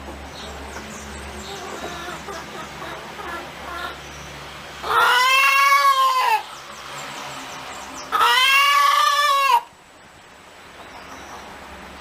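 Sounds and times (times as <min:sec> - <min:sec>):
chicken calling: 0:04.8 - 0:06.5, 0:08.0 - 0:09.8.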